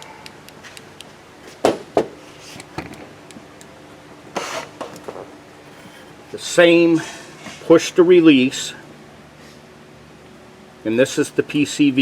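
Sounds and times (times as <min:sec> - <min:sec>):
sharp knocks: 0:01.6 - 0:02.2.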